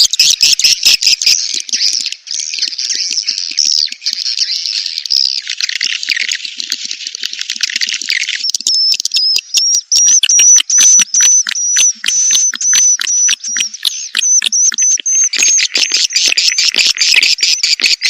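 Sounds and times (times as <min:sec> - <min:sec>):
high bird twittering: 0:08.2 - 0:18.0.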